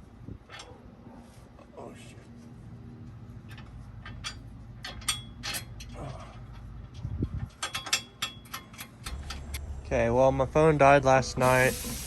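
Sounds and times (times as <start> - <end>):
low steady hum: 0.0 - 12.0
metallic clicks and clanks of tools: 3.4 - 9.6.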